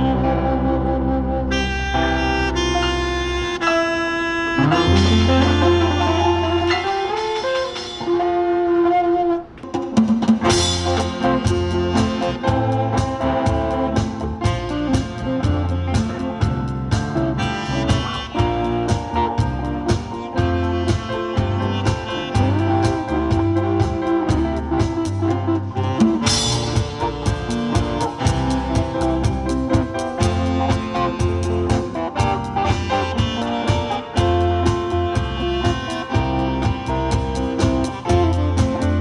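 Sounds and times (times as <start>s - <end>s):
instrumental band playing live: 0.0s - 39.0s.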